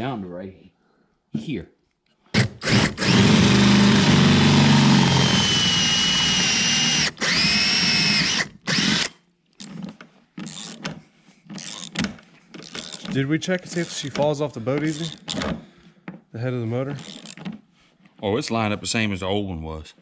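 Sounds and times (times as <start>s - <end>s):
power drill whining: 2.4s - 9.2s, 14.8s - 15.5s, 17.0s - 17.4s.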